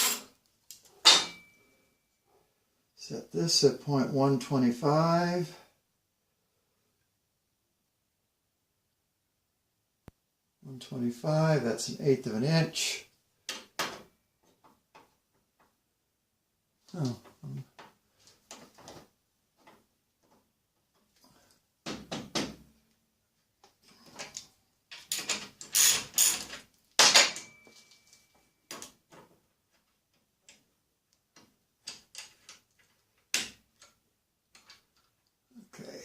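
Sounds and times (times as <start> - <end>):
metal parts clicking and knocking: 24.2 - 27.9, 31.3 - 35.2.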